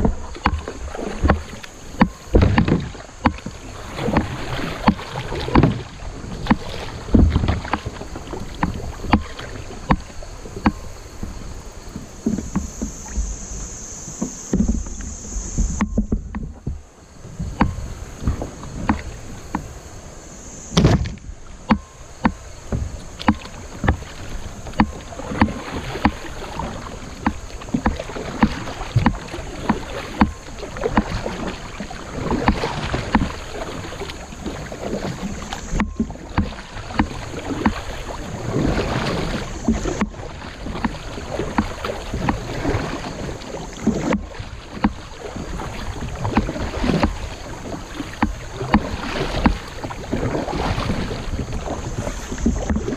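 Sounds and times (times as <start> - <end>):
sharp knocks: 0.0 - 3.5
fast creek water: 0.0 - 52.9
paddle strokes splashing: 0.0 - 52.9.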